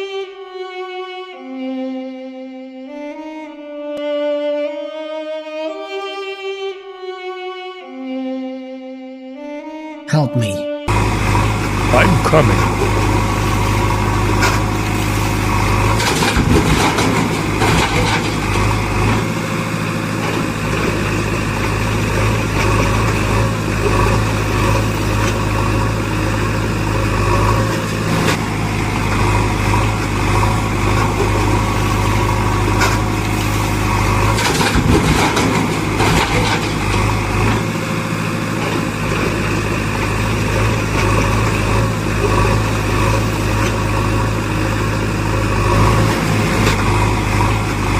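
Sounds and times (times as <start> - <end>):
vehicle engine idling: 10.9 - 47.9.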